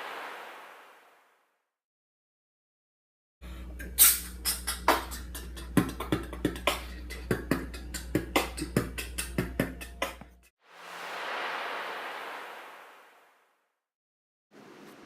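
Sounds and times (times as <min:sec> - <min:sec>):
steady low hum: 0:03.4 - 0:10.4
percussive clicking beat: 0:04.2 - 0:10.5.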